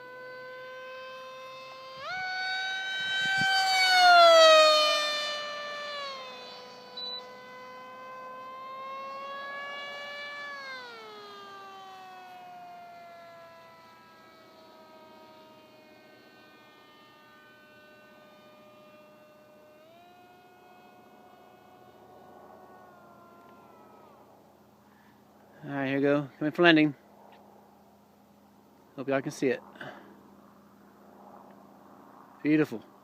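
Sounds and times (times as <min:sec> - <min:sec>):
model airplane motor whining: 0:00.0 - 0:26.1.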